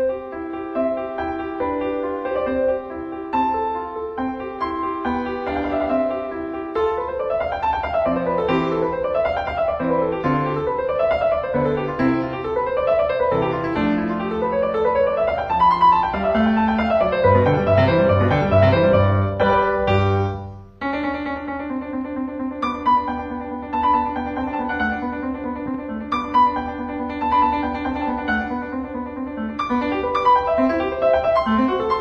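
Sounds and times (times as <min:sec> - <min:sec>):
piano music: 0:00.0 - 0:32.0.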